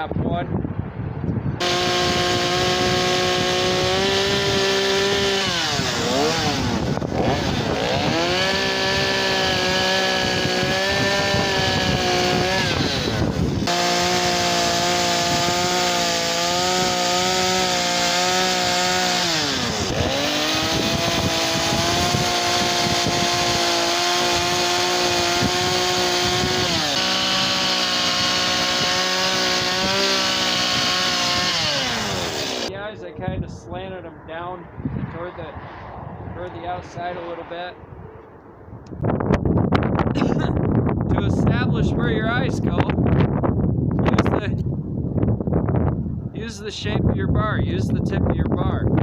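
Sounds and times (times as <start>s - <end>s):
chainsaw cutting log: 1.6s - 32.7s.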